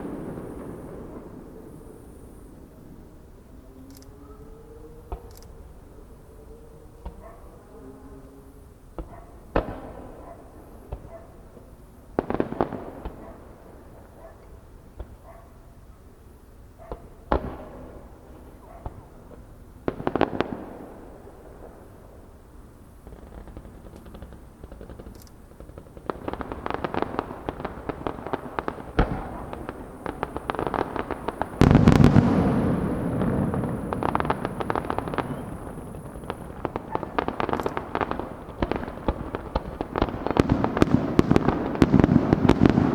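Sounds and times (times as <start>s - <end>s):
rapid crackling firework reports: 17.0s - 42.9s.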